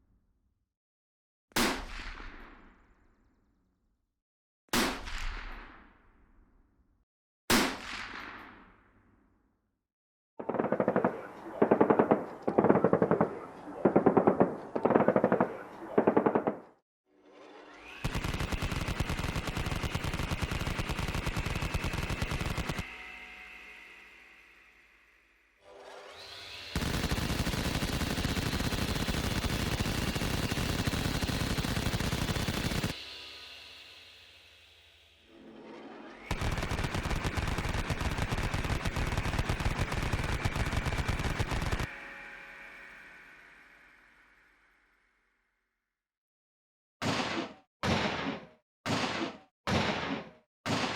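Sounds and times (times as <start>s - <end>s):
gunshot ringing: 10.4s - 16.6s, 47.0s - 50.9s
rapid machine gun fire: 10.4s - 16.7s, 18.0s - 22.9s, 26.8s - 33.0s, 36.3s - 41.9s.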